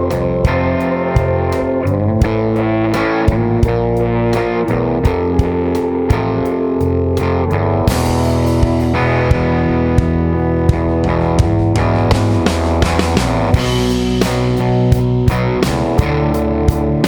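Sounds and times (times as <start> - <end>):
distorted electric guitar: 0.0 - 17.0
steady drum beat: 0.0 - 17.0.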